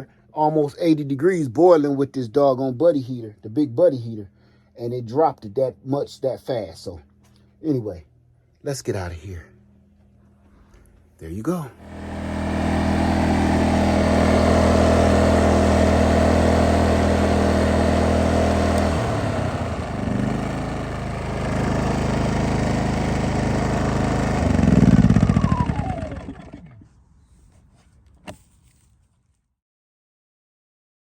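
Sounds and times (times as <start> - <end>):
engine running and spinning down: 11.8 - 27.0.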